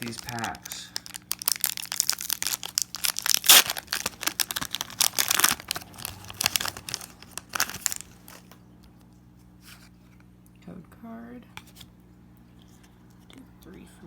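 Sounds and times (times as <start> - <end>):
foil wrapper tearing and crinkling: 0.0 - 8.6.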